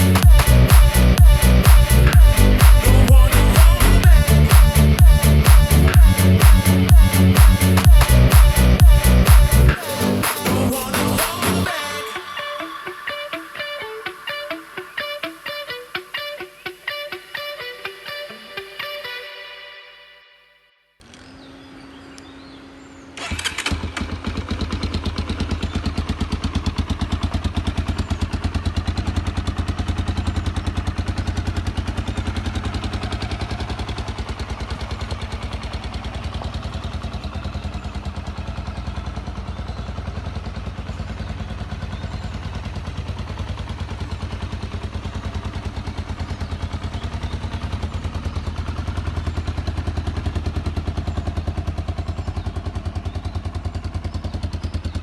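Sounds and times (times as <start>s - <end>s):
motorcycle engine idling: 0.0s - 11.9s, 21.3s - 55.0s
electric starter whirring: 23.1s - 24.3s.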